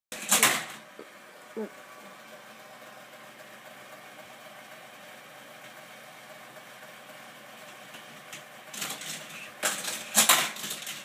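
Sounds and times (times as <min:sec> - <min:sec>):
toy cars clattering down track: 0:00.1 - 0:01.0, 0:07.6 - 0:11.0
faint steady hum: 0:00.6 - 0:06.6.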